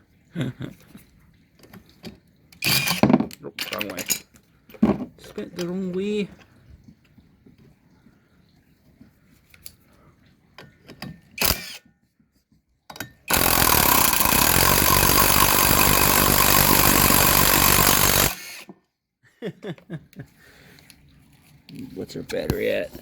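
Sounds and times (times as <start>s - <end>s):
impact driver whining: 11.4s - 11.8s, 13.3s - 18.7s.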